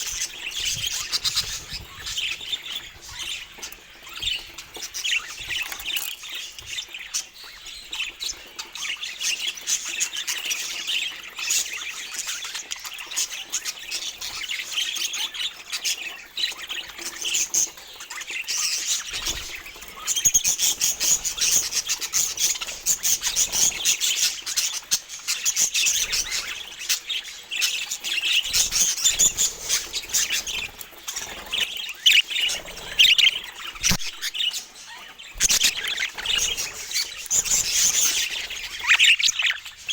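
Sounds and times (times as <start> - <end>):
budgerigars chirping: 0.0 - 39.9.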